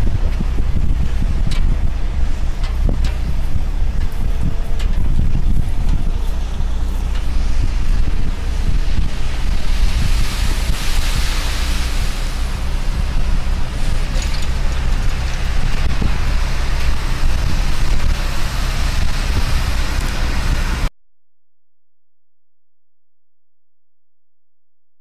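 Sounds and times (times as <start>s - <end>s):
machinery engine running: 0.0s - 20.9s
wind buffeting microphone: 0.0s - 20.9s.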